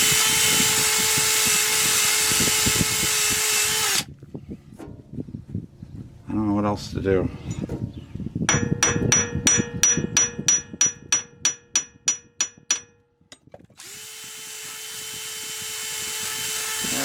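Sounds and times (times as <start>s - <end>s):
small power tool running: 0.0s - 4.1s, 13.8s - 17.0s
hammer striking metal: 8.5s - 13.4s.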